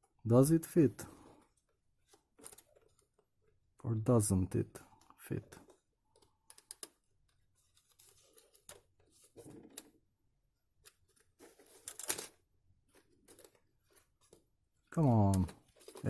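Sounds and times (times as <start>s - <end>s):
plastic parts clicking and scraping: 1.2s - 3.6s, 4.9s - 10.0s, 10.8s - 14.5s, 15.1s - 16.0s.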